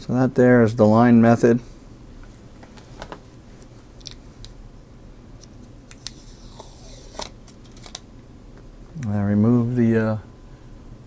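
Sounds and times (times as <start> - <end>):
tape peeling: 5.4 - 8.0.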